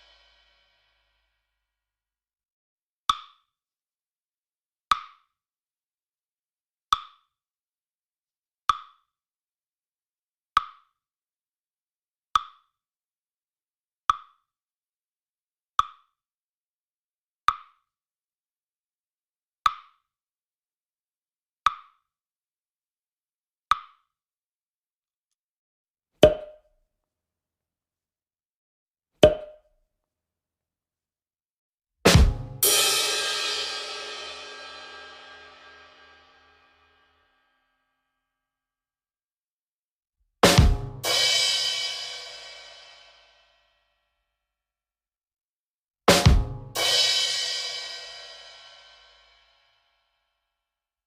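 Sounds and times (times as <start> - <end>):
pitched plop sound effect: 29.2 - 29.6.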